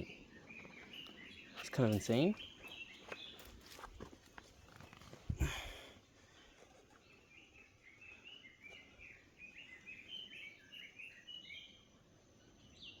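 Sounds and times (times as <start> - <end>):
bird chirping: 0.0 - 3.8, 6.8 - 13.0.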